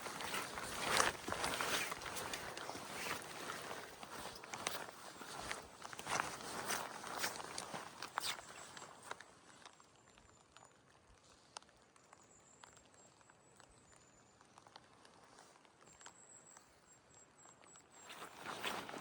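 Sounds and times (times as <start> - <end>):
faint ticks and drips: 7.2 - 18.0.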